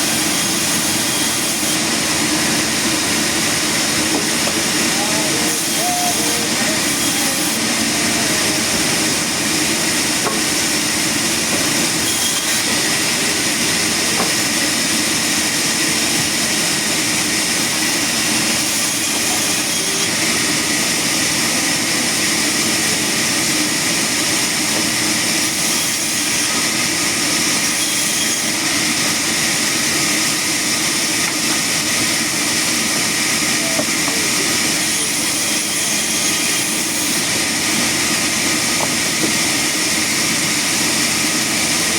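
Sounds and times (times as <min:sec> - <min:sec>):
sawmill machinery running: 0:00.0 - 0:41.9.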